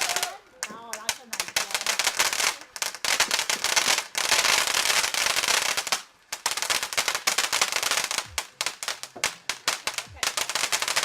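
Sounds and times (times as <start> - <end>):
fireworks crackling and popping: 0.0 - 11.0.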